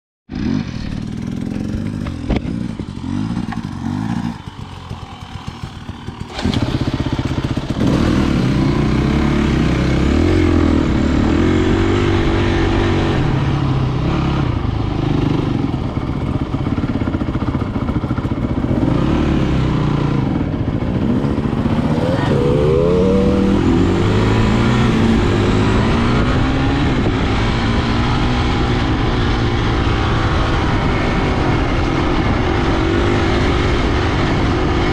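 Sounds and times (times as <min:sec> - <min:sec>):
motor engine running: 0:00.7 - 0:09.6.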